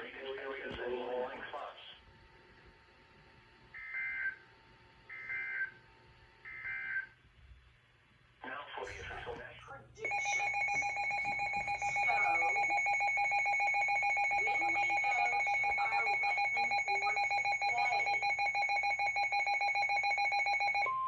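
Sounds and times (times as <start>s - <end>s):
electronic two-tone alarm pulsing: 10.0s - 21.0s.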